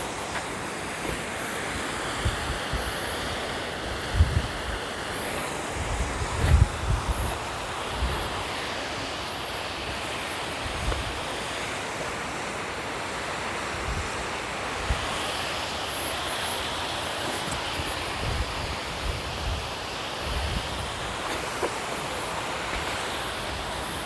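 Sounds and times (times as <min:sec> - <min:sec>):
wind buffeting microphone: 0:03.9 - 0:08.5, 0:17.5 - 0:24.0.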